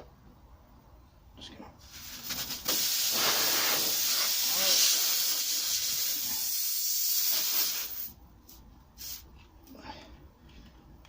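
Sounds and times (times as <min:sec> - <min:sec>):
air hissing out of tyre: 0:01.8 - 0:08.2, 0:09.0 - 0:09.3.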